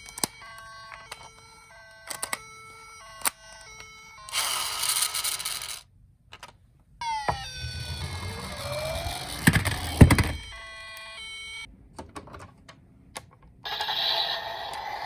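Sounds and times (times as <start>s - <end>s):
toy electronic tones: 0.0s - 5.8s, 7.0s - 11.7s.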